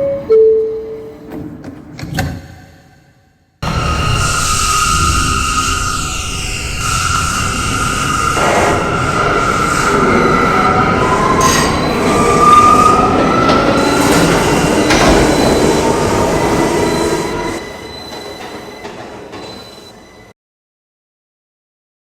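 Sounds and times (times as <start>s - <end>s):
subway train wheel rumble: 0.0s - 2.6s, 3.6s - 20.3s
high-pitched wheel squeal: 3.6s - 20.3s.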